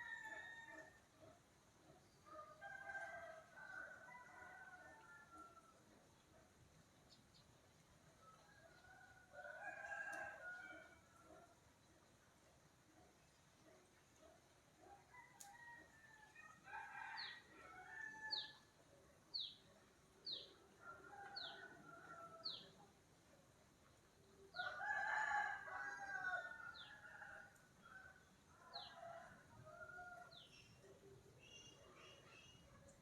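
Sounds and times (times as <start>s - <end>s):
rooster crowing: 24.6s - 27.6s.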